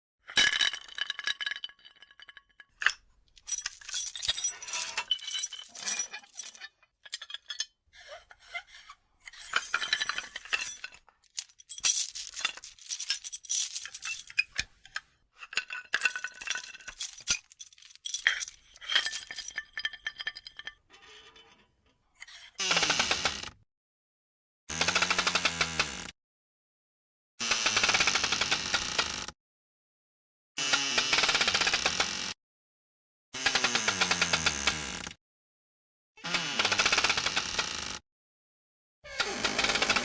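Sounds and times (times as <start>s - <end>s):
metal clinking and rattling: 3.4s - 7.6s, 9.4s - 14.4s, 15.9s - 20.4s.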